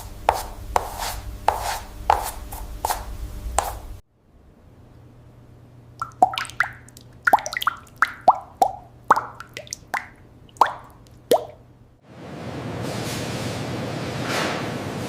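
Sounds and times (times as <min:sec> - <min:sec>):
faint low hum: 0:00.0 - 0:12.0
liquid drops plopping: 0:06.0 - 0:11.6.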